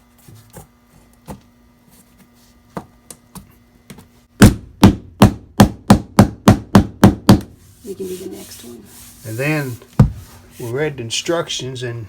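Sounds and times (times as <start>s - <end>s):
rubber mallet knocking floor plank: 4.4s - 7.5s.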